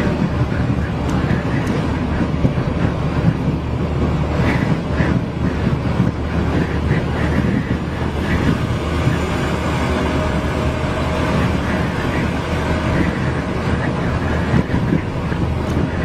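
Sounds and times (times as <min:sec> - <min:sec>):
strong wind on microphone: 0:00.0 - 0:16.0.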